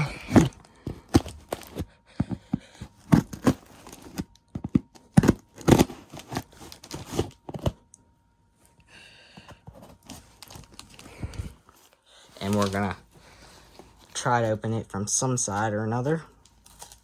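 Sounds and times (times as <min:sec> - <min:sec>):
cardboard box being torn open: 0:00.0 - 0:01.8, 0:02.9 - 0:07.8.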